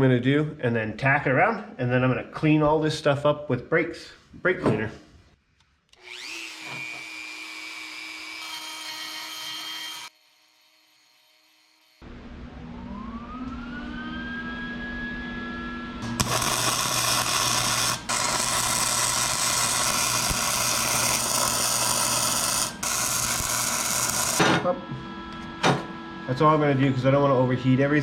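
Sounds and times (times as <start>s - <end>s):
welder whine rising in pitch: 11.8s - 28.0s
low hum: 12.0s - 26.1s
welding arc crackling hiss: 16.0s - 24.6s.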